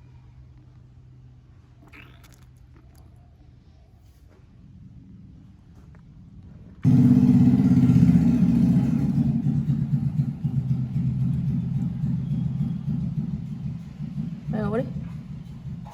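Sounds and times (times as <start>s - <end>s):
low engine rumble: 0.0s - 15.9s.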